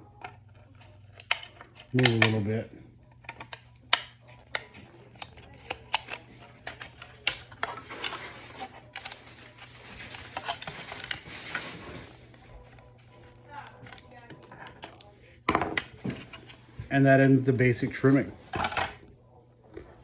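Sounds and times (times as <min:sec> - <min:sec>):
plastic parts clicking and tapping: 0:00.2 - 0:02.4.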